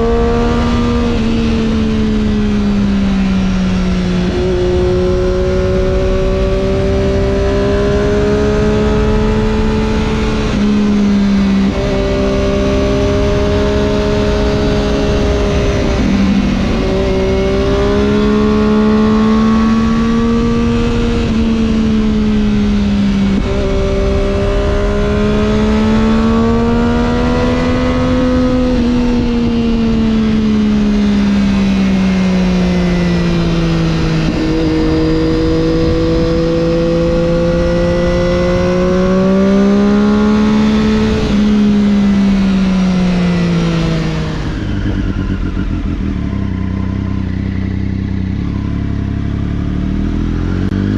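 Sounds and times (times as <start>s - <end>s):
wind rushing over microphone: 0.0s - 48.7s
motorcycle engine revving: 0.0s - 50.9s.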